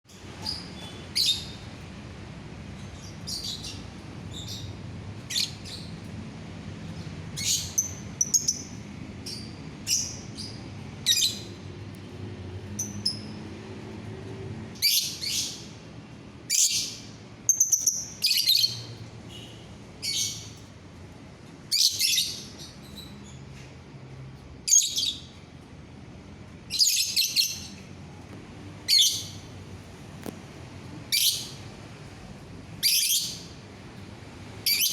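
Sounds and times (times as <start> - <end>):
lovebird chirping and chattering: 0.4 - 1.7, 7.4 - 11.6, 16.5 - 18.9, 26.7 - 27.8, 28.9 - 29.5, 31.1 - 31.6, 32.8 - 33.5, 34.6 - 34.9.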